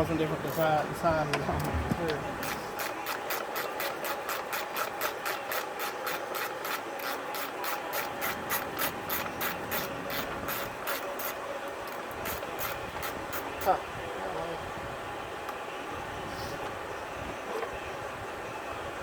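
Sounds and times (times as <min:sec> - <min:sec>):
hand ratchet clicking: 0:02.4 - 0:13.5.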